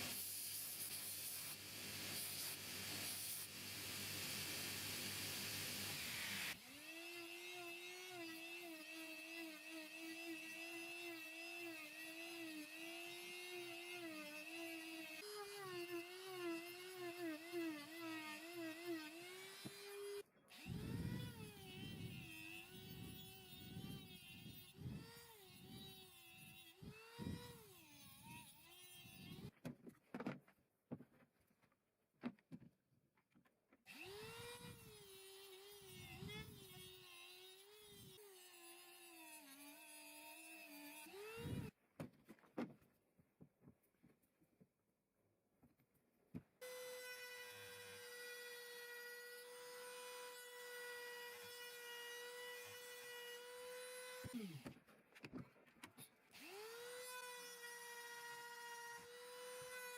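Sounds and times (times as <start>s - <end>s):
power tool motor whining: 5.5s - 28.3s, 52.2s - 54.8s.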